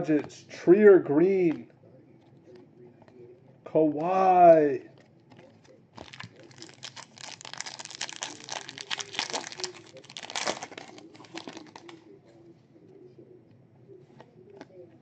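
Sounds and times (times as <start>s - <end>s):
plastic wrapper crinkling and tearing: 6.0s - 12.0s.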